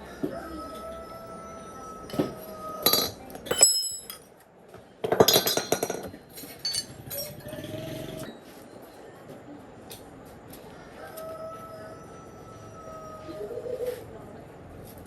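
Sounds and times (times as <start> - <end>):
metal tools clinking: 2.8 - 4.3, 5.1 - 7.5.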